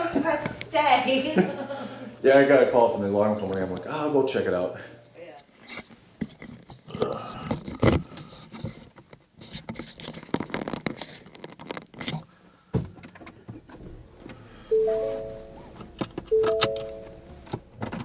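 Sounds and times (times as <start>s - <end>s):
rustling and clicking handling noises: 5.3s - 14.4s
electronic chime of short tones: 14.7s - 15.7s, 16.3s - 17.3s.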